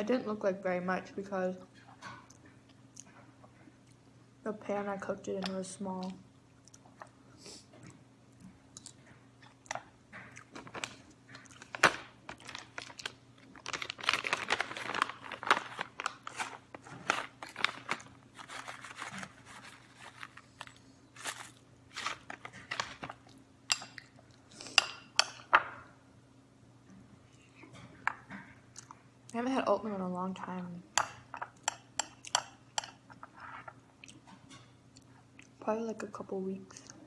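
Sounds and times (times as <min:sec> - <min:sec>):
chewing and crunching food: 0:06.0 - 0:07.2, 0:07.8 - 0:24.5.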